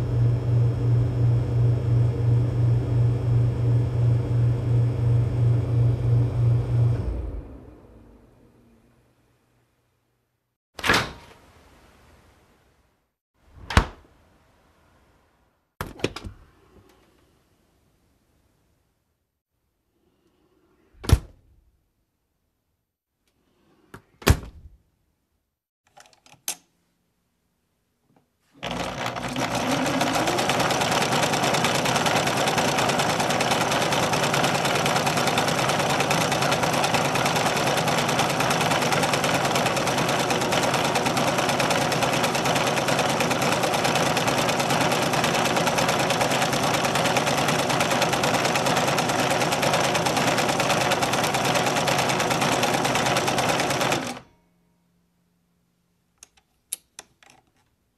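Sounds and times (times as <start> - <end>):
appliance motor rattling: 28.6 - 54.2.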